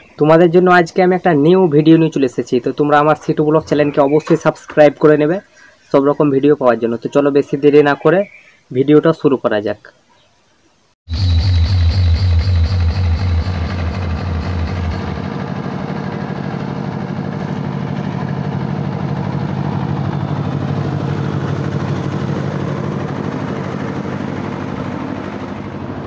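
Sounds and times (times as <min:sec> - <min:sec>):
buzzing low drone: 0:11.1 - 0:26.0
heavy bass pulse: 0:11.1 - 0:26.0.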